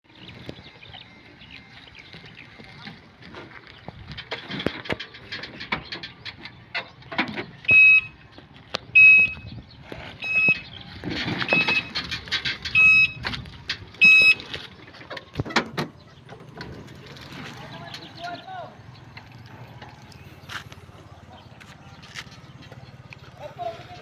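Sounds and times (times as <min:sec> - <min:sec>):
electronic beeper short high beeps: 0:07.7 - 0:08.2, 0:10.2 - 0:10.7, 0:12.8 - 0:13.2, 0:14.0 - 0:14.4.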